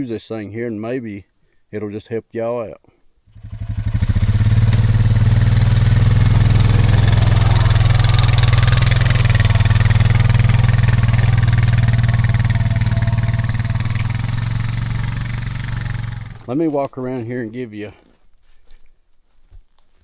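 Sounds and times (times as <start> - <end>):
engine running steadily: 3.4 - 16.5.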